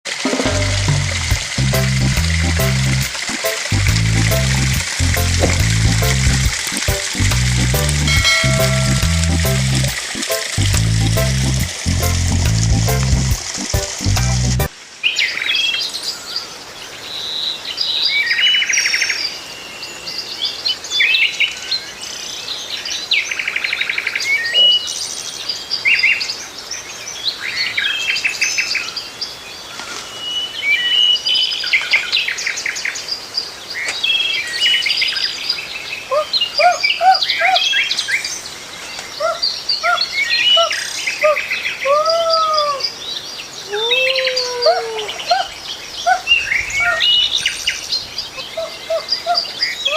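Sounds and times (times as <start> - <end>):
many birds chirping and trilling: 15.0 - 49.9.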